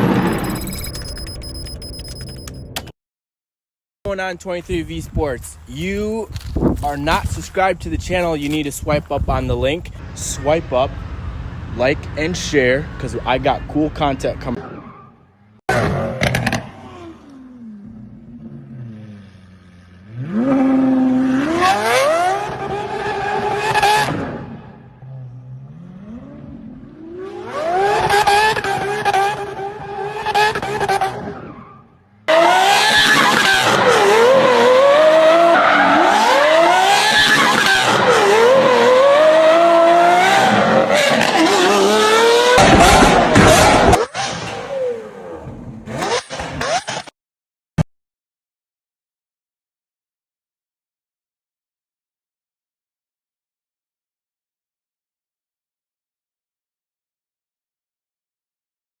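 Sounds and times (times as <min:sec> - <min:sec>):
car accelerating through gears: 0:15.7 - 0:46.8
car engine revving: 0:15.7 - 0:47.0.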